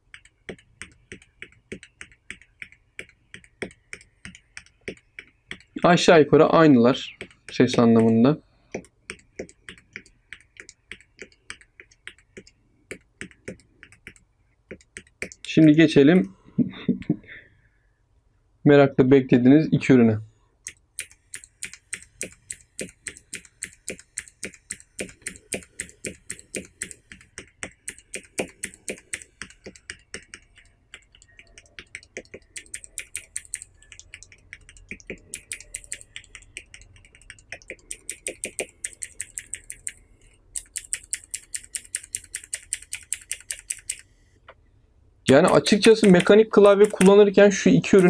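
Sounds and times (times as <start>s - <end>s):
mechanical keyboard switches clicking: 20.7s - 40.0s, 40.6s - 44.0s, 45.4s - 47.2s.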